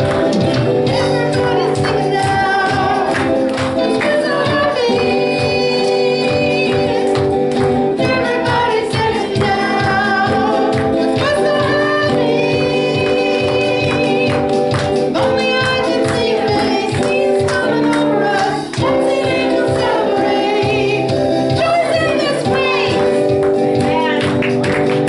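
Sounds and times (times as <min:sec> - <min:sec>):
people singing: 0:00.0 - 0:25.0.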